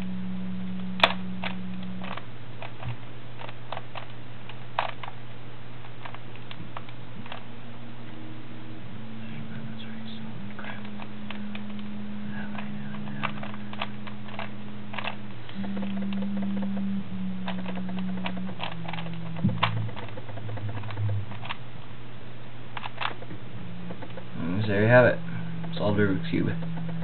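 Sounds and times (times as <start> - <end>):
steady low hum: 0.0 - 27.0
plastic puzzle cube clicking: 12.5 - 21.6, 22.8 - 23.3.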